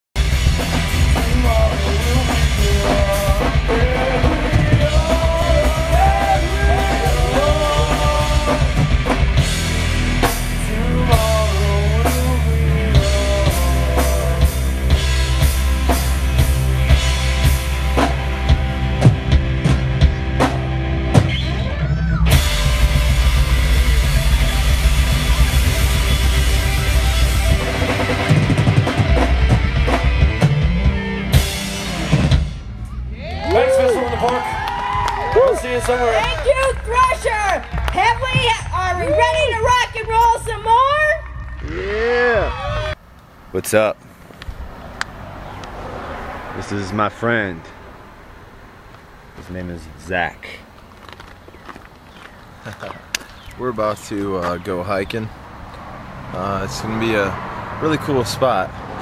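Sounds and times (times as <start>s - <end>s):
rock music with drums: 0.2s - 33.1s, 36.2s - 41.5s.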